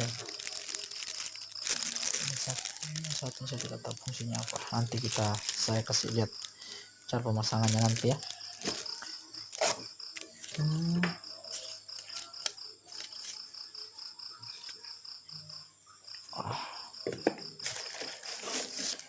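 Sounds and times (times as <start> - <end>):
packaging rustling: 0.0 - 6.7, 7.3 - 10.6, 11.4 - 13.4, 17.5 - 19.0
cricket chirping: 0.0 - 19.0.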